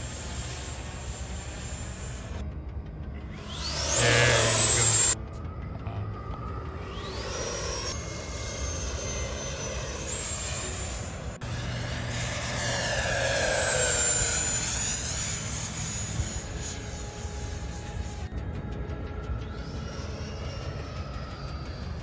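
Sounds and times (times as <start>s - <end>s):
model jet whining past: 0.0s - 2.4s, 3.3s - 5.2s, 6.6s - 18.3s.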